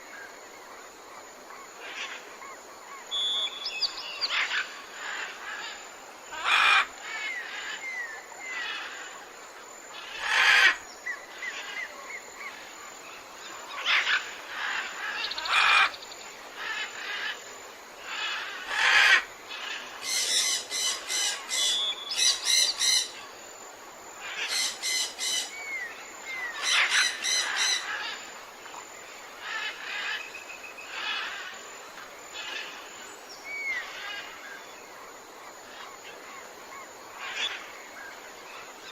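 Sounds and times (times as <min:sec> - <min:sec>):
gliding bird whistles: 0:03.1 - 0:04.0.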